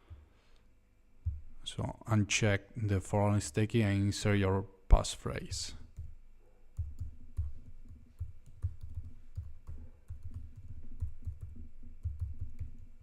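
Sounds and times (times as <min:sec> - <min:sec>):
typing on keyboard: 0:06.8 - 0:12.9.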